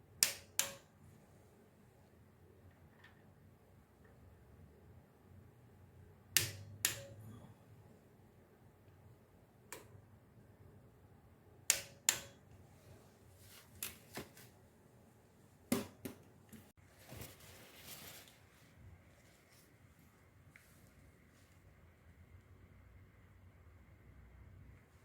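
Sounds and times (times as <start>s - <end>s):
soft rustle: 12.7s - 14.6s, 16.8s - 21.8s.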